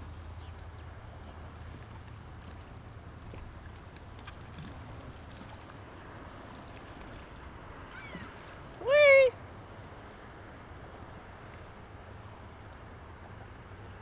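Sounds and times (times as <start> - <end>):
faint lakeside ambience: 0.0 - 14.0
birds making short sounds: 7.9 - 8.4.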